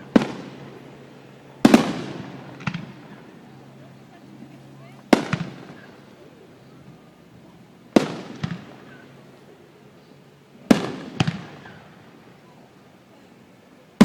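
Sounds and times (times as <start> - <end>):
fireworks bursting: 0.0 - 3.5, 4.4 - 7.0, 7.9 - 9.3, 10.6 - 12.4.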